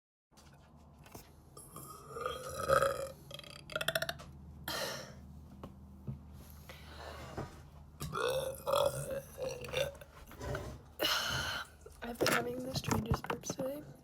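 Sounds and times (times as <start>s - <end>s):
person burping: 1.6s - 5.2s, 8.1s - 10.0s.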